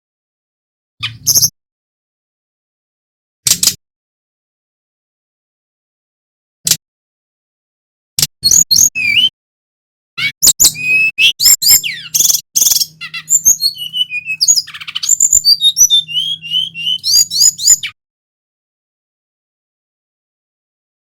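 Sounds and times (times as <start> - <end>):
bird singing whistles and chatters: 8.4 - 9.3, 10.2 - 18.0.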